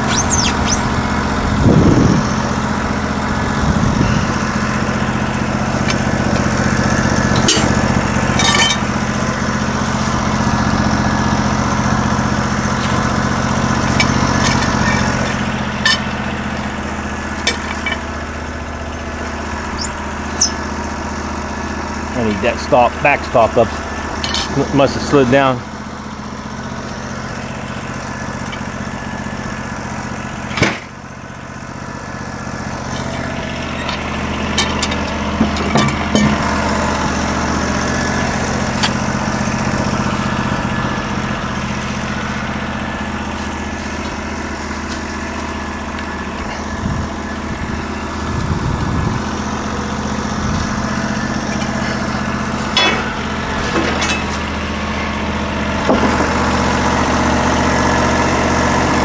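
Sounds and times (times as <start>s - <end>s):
sawmill engine running: 0.0s - 59.0s
sharp metal clank: 52.7s - 53.2s.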